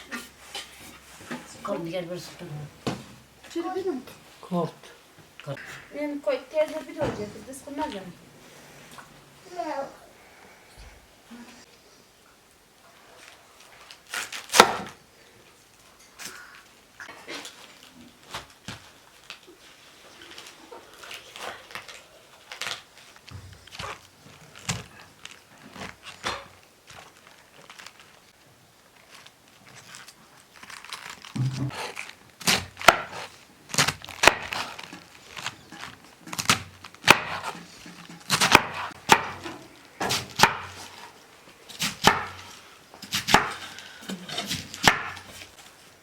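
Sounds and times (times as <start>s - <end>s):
chopping on wood: 14.5s - 15.0s, 31.4s - 33.2s, 34.2s - 34.6s, 36.4s - 37.6s, 38.3s - 40.8s, 41.8s - 42.4s, 43.1s - 43.6s, 44.7s - 45.3s.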